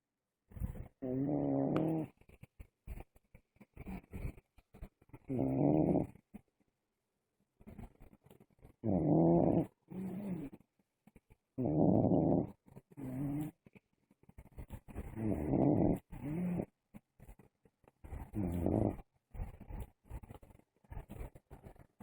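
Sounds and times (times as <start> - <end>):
person snoring: 1.0 - 2.1, 5.3 - 6.1, 8.8 - 10.5, 11.6 - 13.5, 15.2 - 16.7, 18.4 - 19.0.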